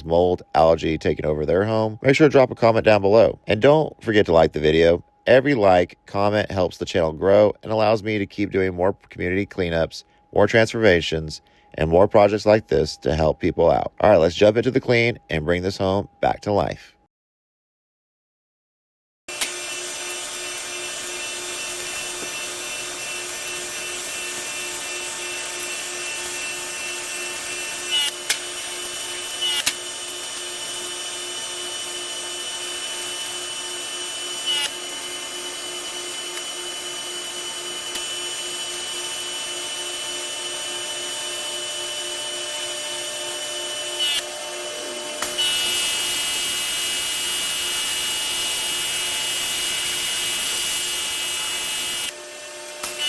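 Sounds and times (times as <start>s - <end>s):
pressure washer motor whine: 19.3s - 53.0s.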